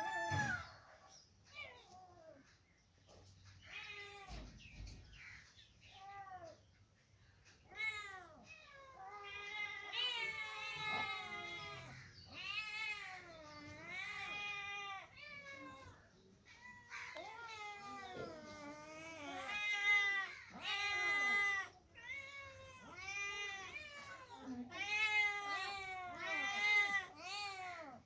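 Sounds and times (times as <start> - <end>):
kittens meowing: 7.6 - 28.0.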